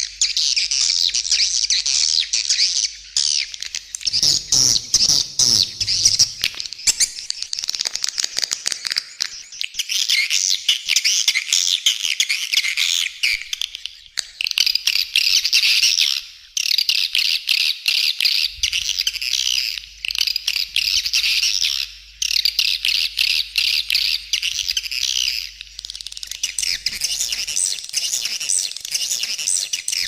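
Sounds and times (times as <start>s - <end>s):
high-pitched bird twittering: 0.2s - 7.4s.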